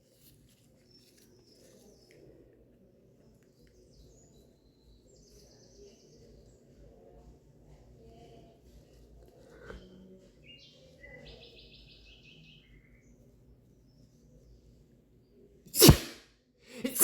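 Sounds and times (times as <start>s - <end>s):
faint high bird chirps: 9.8s - 14.6s
man sneezing loudly: 15.8s - 16.2s, 16.8s - 17.0s.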